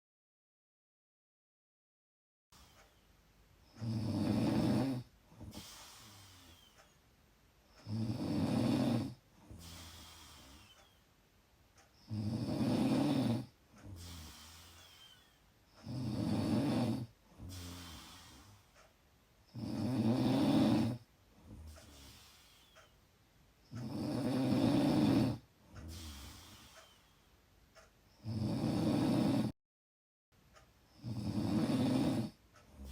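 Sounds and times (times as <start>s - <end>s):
quiet breath: 2.6s - 28.4s
person snoring: 3.7s - 6.8s, 7.8s - 10.8s, 12.0s - 18.8s, 19.5s - 22.8s, 23.8s - 27.2s, 28.2s - 29.5s, 31.0s - 32.9s.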